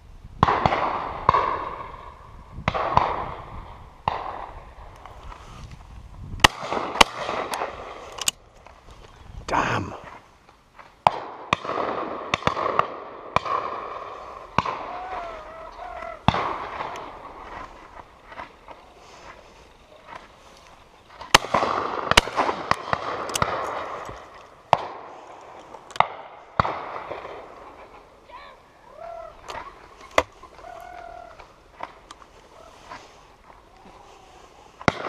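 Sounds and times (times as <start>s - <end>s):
shotgun shots echoing: 0.4s - 4.6s, 6.4s - 8.0s, 11.0s - 17.7s, 21.2s - 25.2s, 26.0s - 28.1s.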